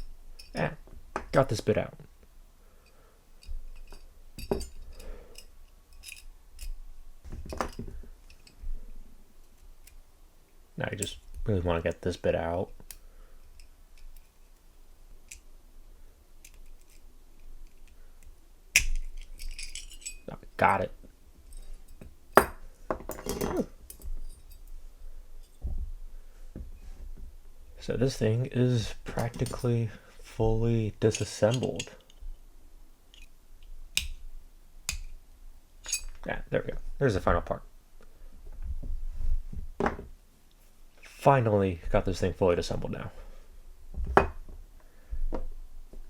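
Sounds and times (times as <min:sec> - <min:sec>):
small metal parts clicking: 0:02.8 - 0:06.8, 0:07.5 - 0:08.6, 0:16.4 - 0:20.3, 0:33.1 - 0:33.3.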